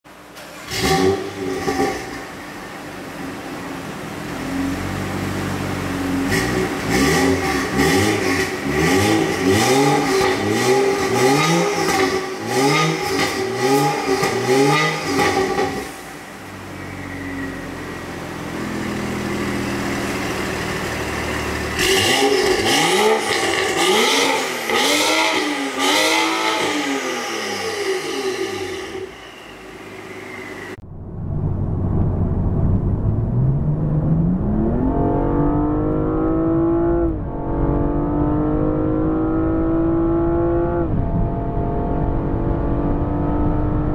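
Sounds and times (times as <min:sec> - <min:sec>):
car engine revving with crackles: 0:00.1 - 0:43.9
car engine idling: 0:15.9 - 0:22.7.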